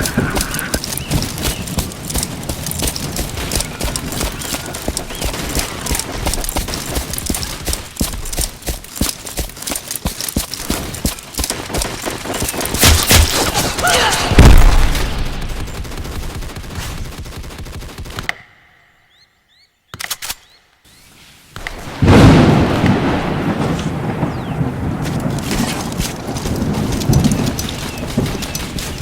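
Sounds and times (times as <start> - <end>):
thunder crash: 14.2 - 15.7, 21.8 - 29.0
rain: 21.6 - 29.0.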